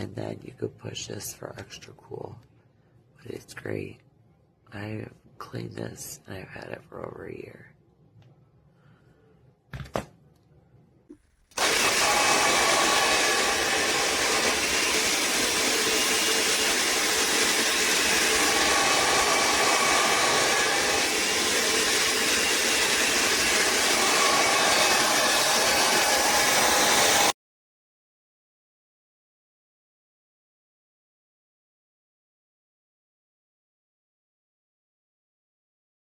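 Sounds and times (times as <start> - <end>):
hair dryer blowing: 11.1 - 27.4.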